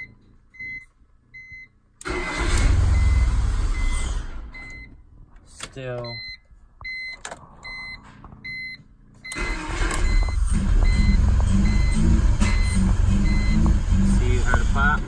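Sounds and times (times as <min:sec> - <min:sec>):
electronic warning beep: 0:00.0 - 0:05.0, 0:06.0 - 0:15.0
car engine rough idle: 0:09.6 - 0:15.0.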